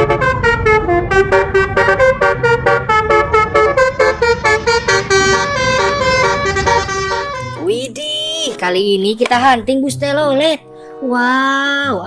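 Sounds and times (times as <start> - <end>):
musical bus horn tune: 0.0 - 7.8.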